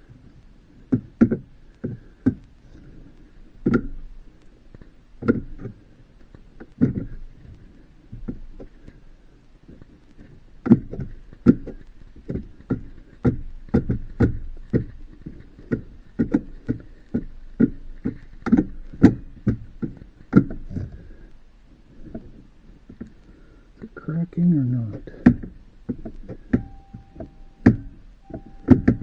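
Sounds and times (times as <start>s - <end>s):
knocks and clicks of hard parts: 26.1s - 29.0s.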